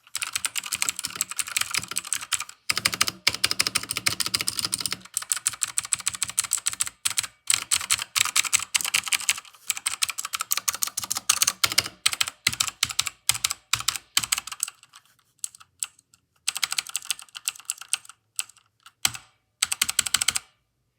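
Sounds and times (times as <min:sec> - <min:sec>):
mechanical keyboard clicks: 0:00.1 - 0:20.5.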